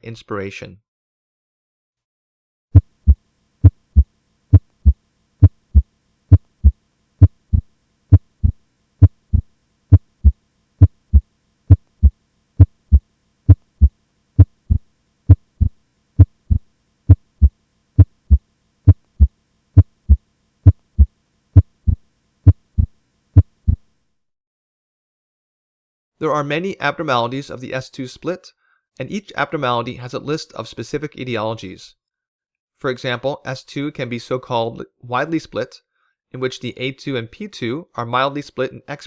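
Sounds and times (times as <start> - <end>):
heartbeat thuds: 2.8 - 23.9
faint steady hum: 2.8 - 24.0.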